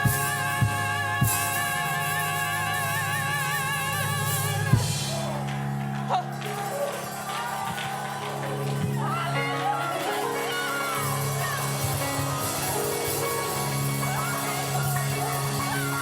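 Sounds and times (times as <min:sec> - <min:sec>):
live band with drums: 0:00.0 - 0:05.6, 0:06.3 - 0:16.0
choir singing held note: 0:04.9 - 0:16.0.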